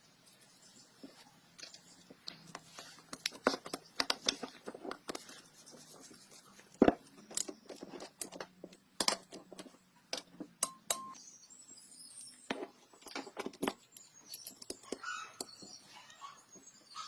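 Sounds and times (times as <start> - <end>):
metal parts clicking and scraping: 12.2 - 15.6.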